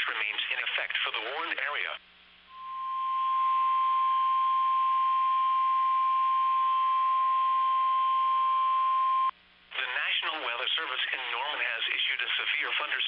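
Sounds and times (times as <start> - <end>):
high-pitched warning tone: 2.5 - 9.3.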